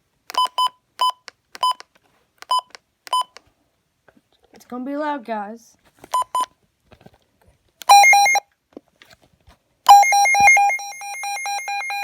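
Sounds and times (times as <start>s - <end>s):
pulsing two-tone electronic alarm: 7.9s - 8.4s, 9.9s - 12.0s
short beeps: 7.9s - 8.4s, 9.9s - 12.0s.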